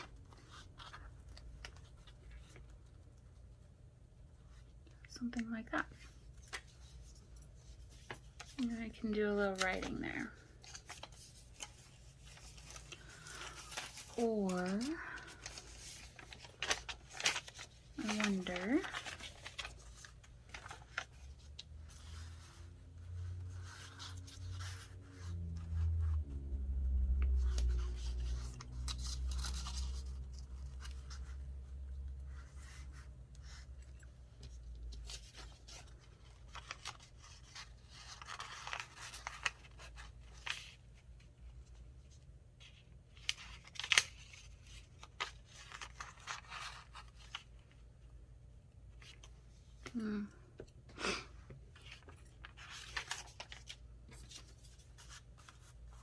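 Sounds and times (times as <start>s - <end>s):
paper rustling and scraping: 6.0s - 26.4s, 27.2s - 47.9s, 51.7s - 56.0s
low hum: 18.2s - 34.1s.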